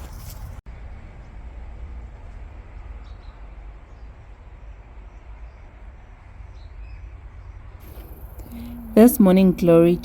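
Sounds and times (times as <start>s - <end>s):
low outdoor rumble: 7.2s - 10.0s
faint bird chirp: 7.9s - 10.0s.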